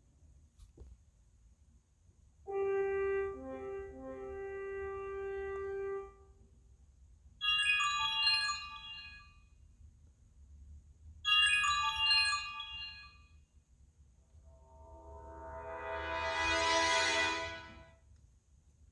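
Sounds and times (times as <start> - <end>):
high-pitched phone ringtone chime: 7.4 - 9.3, 11.3 - 13.3.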